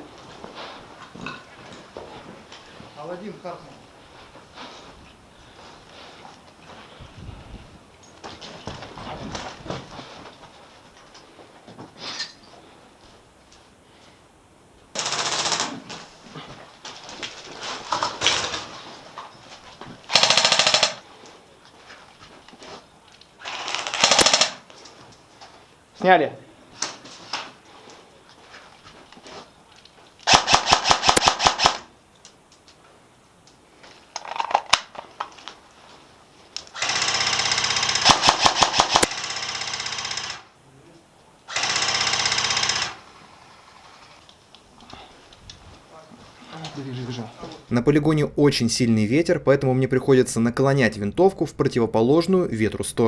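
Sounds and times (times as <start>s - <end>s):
airsoft guns firing bursts: 15.0s - 15.9s, 20.1s - 21.0s, 23.4s - 24.7s, 30.2s - 31.9s, 36.8s - 40.5s, 41.5s - 43.1s.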